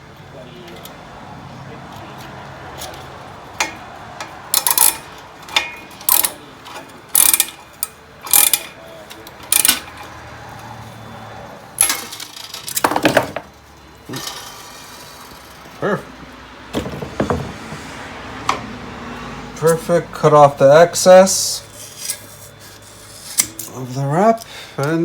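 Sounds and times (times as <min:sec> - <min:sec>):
metallic clicks and rasps of tie tool: 0:04.6 - 0:08.7.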